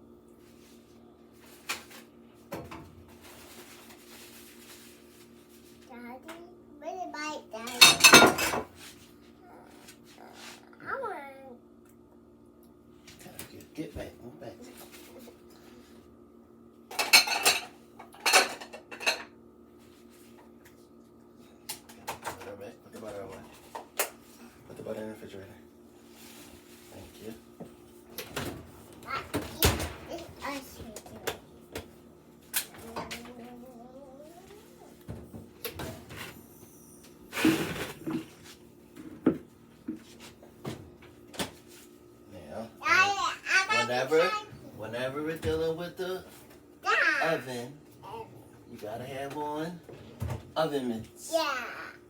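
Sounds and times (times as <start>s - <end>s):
dishes clinking: 7.7s - 8.7s, 16.9s - 19.3s
dishes and utensils clattering: 7.7s - 8.8s, 16.9s - 19.3s.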